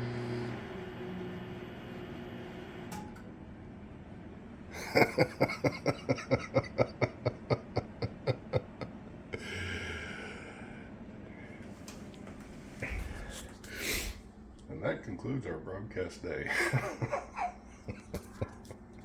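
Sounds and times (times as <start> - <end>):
microwave humming: 0.0 - 19.0
man laughing: 4.7 - 9.7, 16.4 - 18.8.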